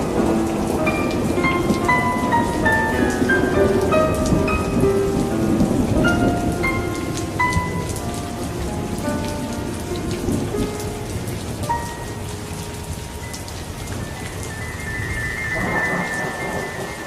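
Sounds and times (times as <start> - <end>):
steady rain: 0.0 - 17.0
low thunder rumble: 12.8 - 17.0.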